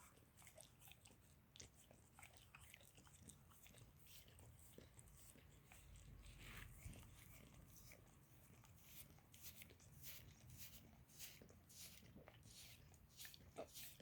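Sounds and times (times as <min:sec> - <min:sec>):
dog licking: 0:00.0 - 0:14.0.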